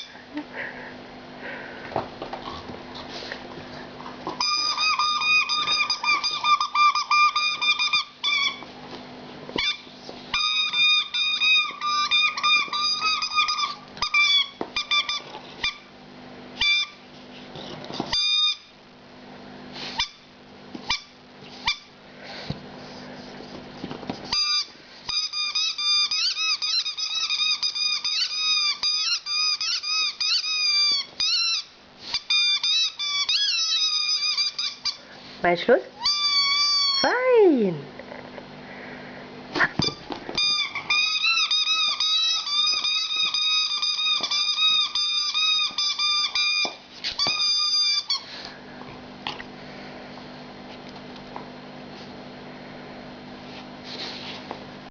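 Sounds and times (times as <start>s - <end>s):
rubber squeaky toy squeaking: 4.4s - 8.6s, 9.6s - 15.9s, 16.6s - 17.0s, 18.1s - 18.7s, 24.3s - 35.0s, 36.0s - 37.2s, 39.7s - 48.2s.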